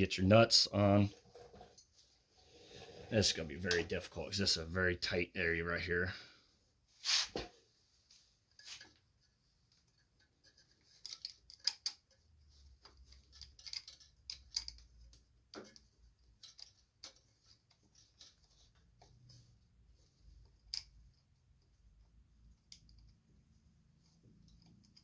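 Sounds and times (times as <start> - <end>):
small metallic clicks and taps: 9.2 - 19.4, 20.4 - 25.0.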